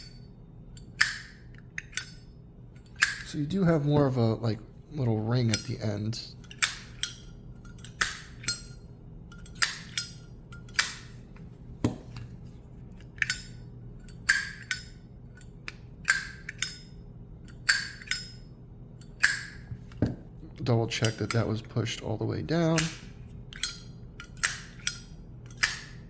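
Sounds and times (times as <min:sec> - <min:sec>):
lighter lid clicking open and shut: 0:00.8 - 0:02.2, 0:06.5 - 0:08.7, 0:09.3 - 0:11.1, 0:14.1 - 0:15.0, 0:15.7 - 0:16.9, 0:17.5 - 0:18.4, 0:19.0 - 0:19.6, 0:22.8 - 0:26.0.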